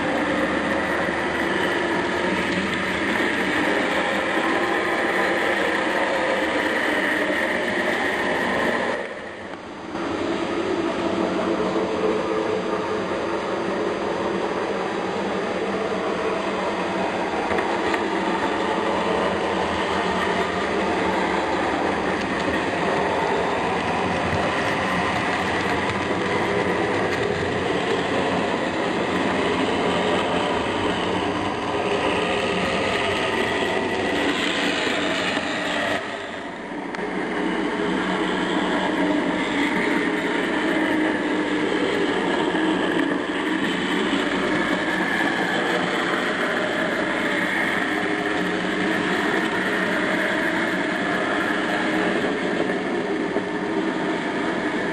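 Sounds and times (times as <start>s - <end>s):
model trains running: 0.0s - 54.9s.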